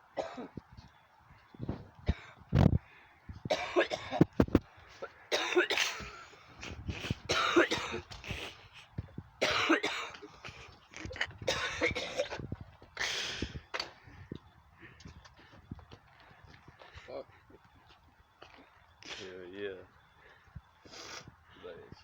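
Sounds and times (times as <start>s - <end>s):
person coughing: 0.2s - 0.5s, 3.5s - 4.2s, 5.3s - 6.2s, 7.3s - 8.5s, 9.4s - 10.2s, 11.0s - 12.4s.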